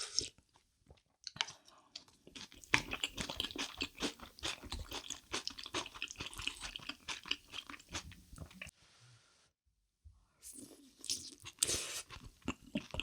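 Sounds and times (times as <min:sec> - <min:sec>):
chewing crunchy food: 0:01.2 - 0:08.7, 0:11.0 - 0:13.0.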